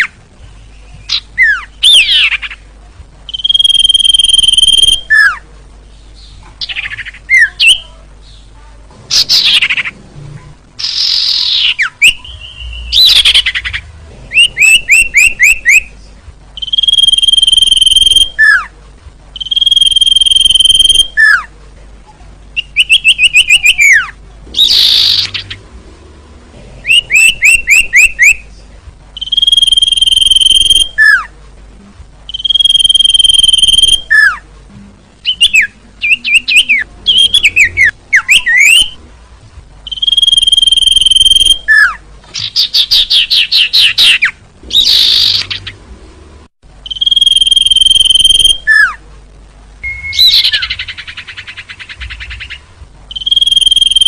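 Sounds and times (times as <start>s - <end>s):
bird whistled notes: 3.3s - 5.4s, 16.6s - 18.6s, 19.4s - 21.4s, 26.9s - 28.4s, 29.2s - 31.3s, 32.3s - 34.4s, 35.3s - 39.0s, 39.9s - 42.0s, 46.9s - 49.0s, 49.8s - 51.5s, 52.2s - 54.0s.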